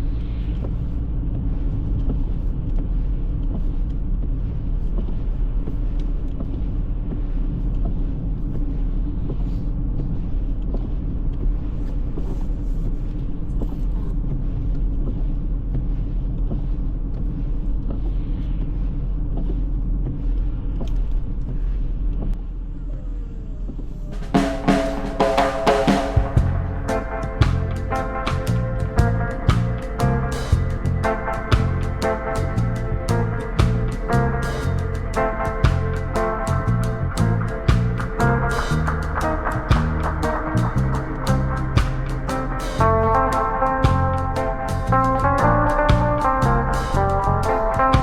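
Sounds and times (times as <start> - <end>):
road noise: 24.2 - 48.0
car engine rumble: 26.3 - 48.0.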